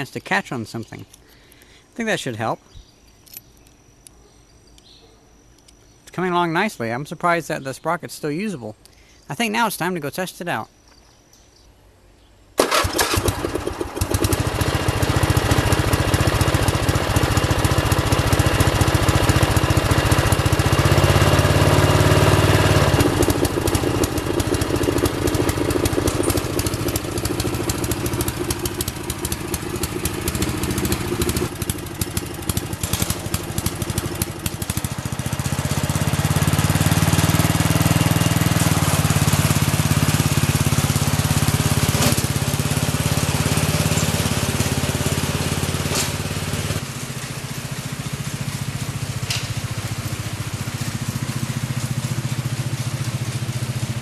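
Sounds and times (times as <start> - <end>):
lawnmower engine running: 12.6 - 54.0.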